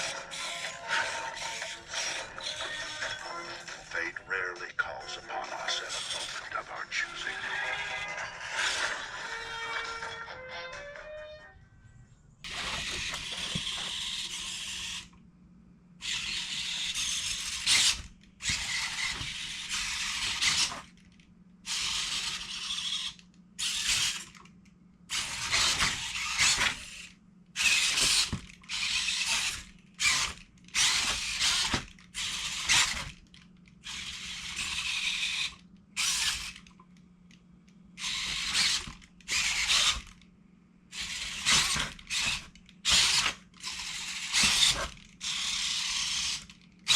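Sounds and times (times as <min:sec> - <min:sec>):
servo motors whirring: 0:12.5 - 0:15.1, 0:16.0 - 0:20.9, 0:21.7 - 0:24.4, 0:25.1 - 0:33.2, 0:33.8 - 0:36.7, 0:38.0 - 0:40.2, 0:40.9 - 0:46.9.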